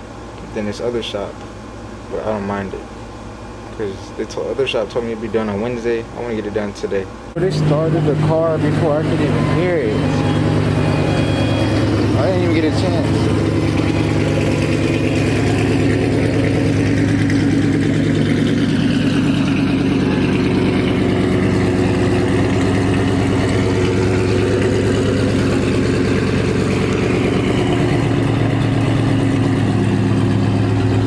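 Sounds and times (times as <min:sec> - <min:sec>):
car engine idling: 0:07.0 - 0:31.0.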